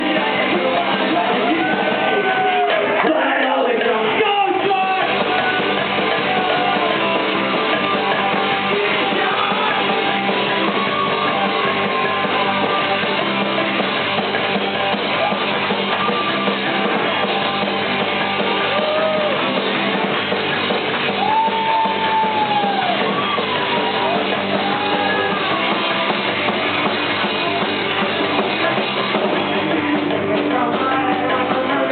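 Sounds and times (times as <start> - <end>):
rock music with guitar: 0.0 - 31.9
people singing: 8.7 - 10.0, 28.6 - 31.9.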